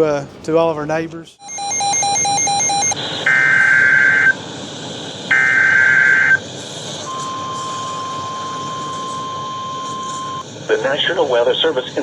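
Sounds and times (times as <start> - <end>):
pulsing alert tone: 1.4 - 3.0
steady warning alarm tone: 1.4 - 12.0
static hiss: 4.0 - 12.0.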